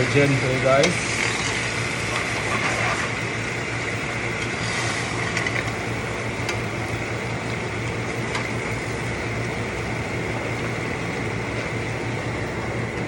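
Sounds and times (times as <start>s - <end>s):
food hissing in oil: 0.8s - 6.2s.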